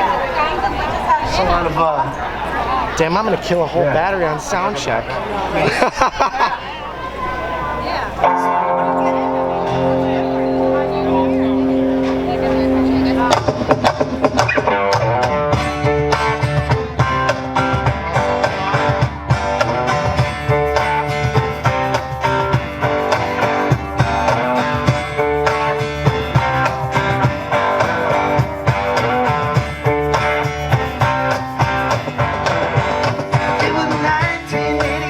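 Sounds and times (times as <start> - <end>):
guitars: 0.0 - 35.0
steady drum beat: 9.4 - 35.0.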